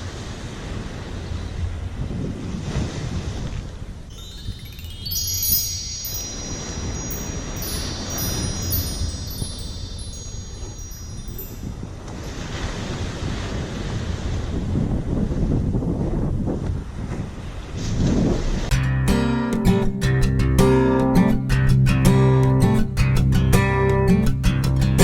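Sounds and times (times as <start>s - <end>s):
wind on microphone: 0.2s - 18.7s
bite bell ringing: 4.1s - 11.8s.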